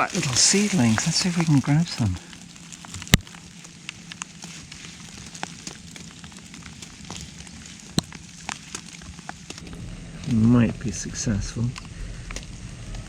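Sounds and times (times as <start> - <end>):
raindrops ticking: 0.0 - 13.0.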